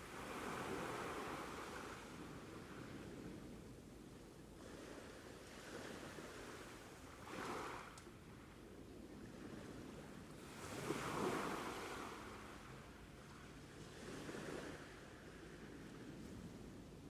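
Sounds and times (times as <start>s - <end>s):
sea waves breaking: 0.0s - 2.9s, 4.6s - 8.0s, 10.4s - 16.4s.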